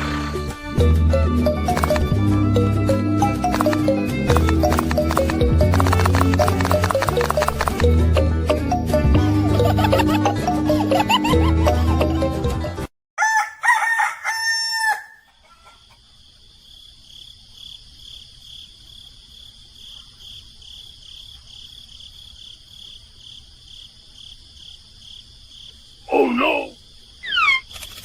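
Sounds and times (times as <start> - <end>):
rooster crowing: 13.2 - 16.0.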